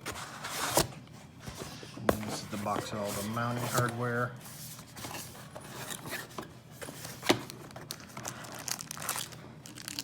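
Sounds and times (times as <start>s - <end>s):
packaging crinkling and rustling: 4.8s - 10.0s.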